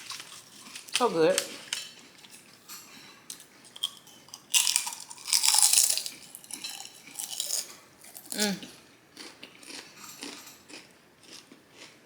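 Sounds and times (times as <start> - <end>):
chips crunching in mouth: 3.8 - 8.6, 9.2 - 12.0.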